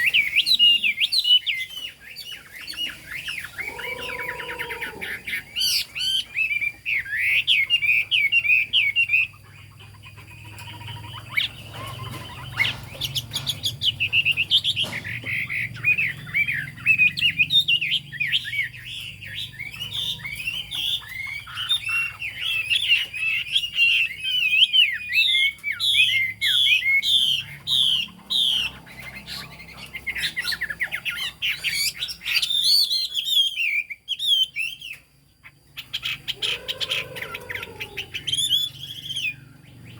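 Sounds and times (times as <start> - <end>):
bird singing whistled phrases: 30.2 - 35.0.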